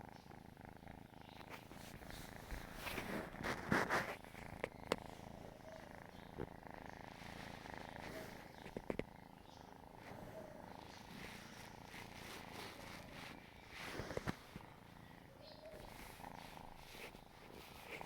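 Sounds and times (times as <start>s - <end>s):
kitten purring: 0.0s - 18.0s
faint clicks: 4.4s - 5.2s, 8.1s - 9.1s.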